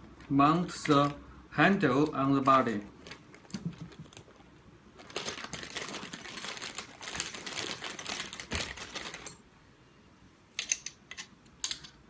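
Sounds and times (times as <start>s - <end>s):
metal parts clicking and rattling: 10.6s - 12.0s.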